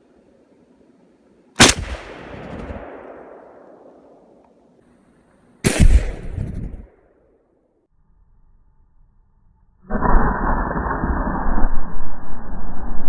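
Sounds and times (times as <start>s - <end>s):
deep blast: 1.6s - 4.2s, 5.7s - 6.9s
rifle shot echoing: 1.6s - 4.4s, 5.7s - 6.9s.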